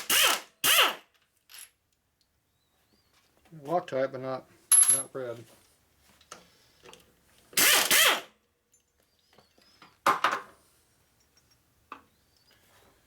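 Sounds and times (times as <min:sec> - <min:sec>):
metal tools clanking on a workbench: 0:04.7 - 0:05.2.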